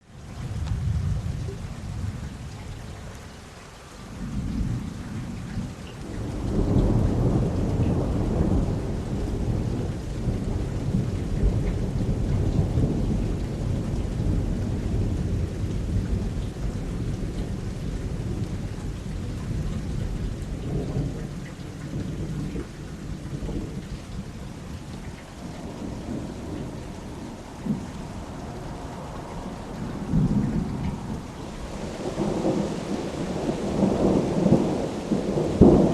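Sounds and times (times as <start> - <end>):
rain hissing: 0.0 - 35.9
thunder rolling: 4.2 - 35.9
sharp thunder crack: 25.5 - 35.9.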